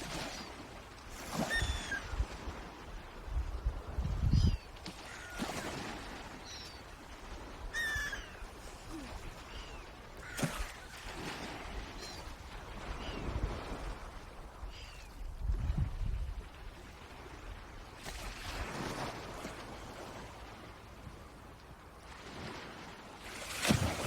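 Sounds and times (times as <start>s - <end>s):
short high bird calls: 1.5s - 2.1s, 7.7s - 8.4s
wind rumble on microphone: 1.6s - 4.8s, 11.6s - 20.1s.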